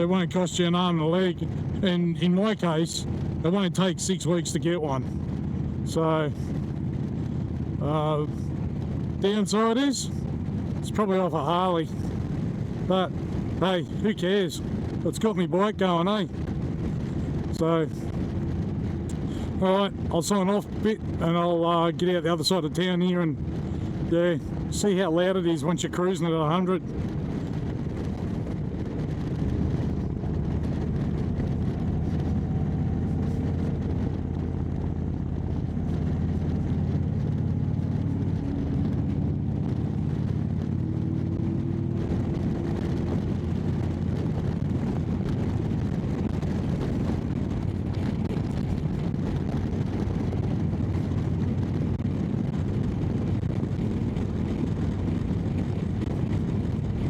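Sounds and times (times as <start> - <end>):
motorcycle engine accelerating: 26.8 - 57.0.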